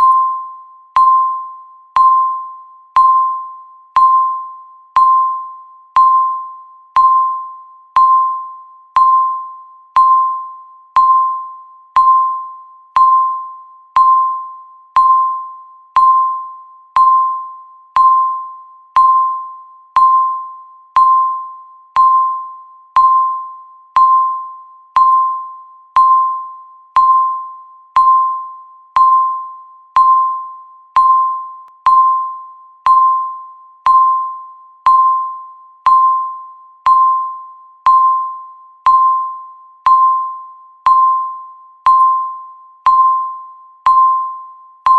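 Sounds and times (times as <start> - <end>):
timer beeping: 0.0 - 44.9.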